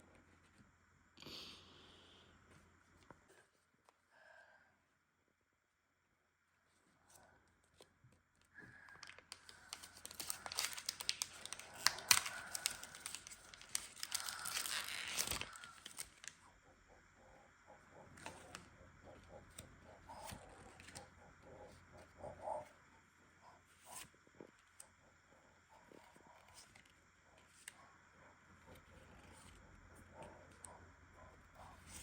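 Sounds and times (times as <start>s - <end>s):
foil wrapper tearing and crinkling: 9.0s - 16.3s.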